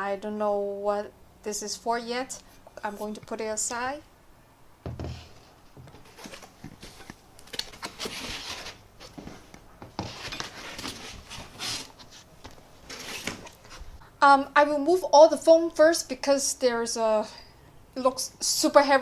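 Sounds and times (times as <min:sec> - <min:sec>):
soft thump: 0:04.8 - 0:05.3
packing materials rustling: 0:06.0 - 0:14.0.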